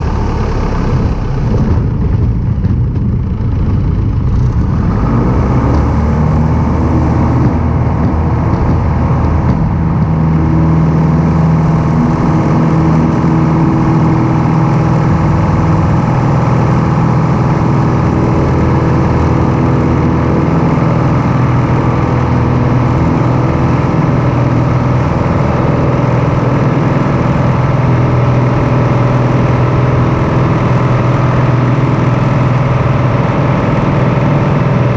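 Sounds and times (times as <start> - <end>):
light aircraft piston engine drone: 0.0 - 34.9.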